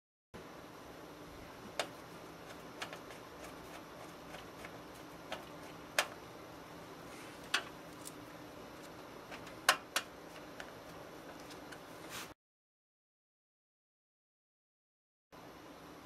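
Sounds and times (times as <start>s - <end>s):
faint steady hum: 0.4s - 12.4s, 15.4s - 16.0s.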